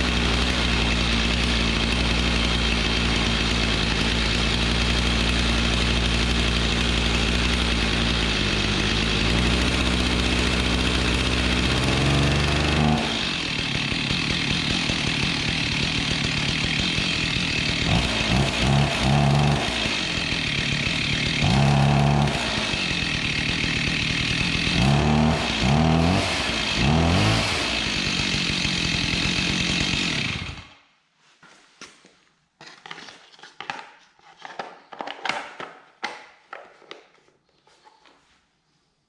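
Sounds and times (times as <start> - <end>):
chainsaw engine revving: 0.0 - 30.8.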